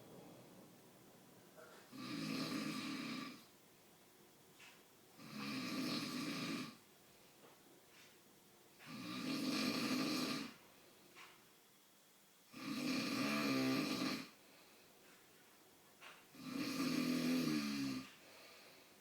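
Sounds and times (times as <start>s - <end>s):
man snoring: 1.9s - 3.4s, 5.2s - 6.8s, 8.9s - 10.6s, 12.5s - 14.4s, 16.4s - 18.1s.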